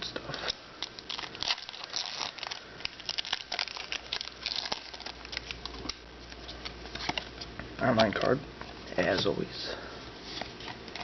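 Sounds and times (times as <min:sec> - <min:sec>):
foil wrapper crinkling and tearing: 0:00.8 - 0:07.3.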